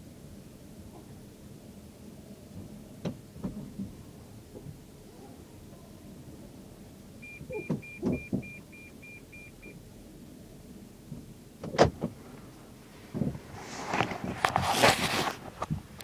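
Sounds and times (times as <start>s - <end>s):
short electronic beeps: 7.2s - 9.8s.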